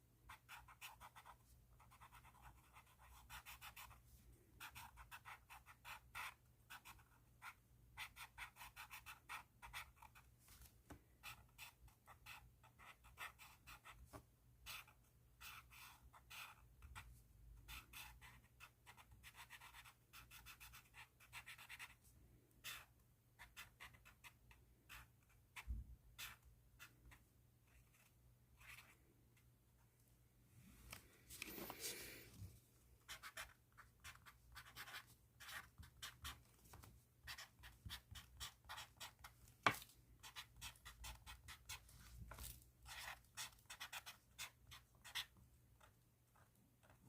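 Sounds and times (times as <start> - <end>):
pen scratching on paper: 0.3 - 4.0, 4.6 - 10.3, 11.2 - 14.0, 14.6 - 22.0, 22.6 - 29.0, 33.0 - 47.0.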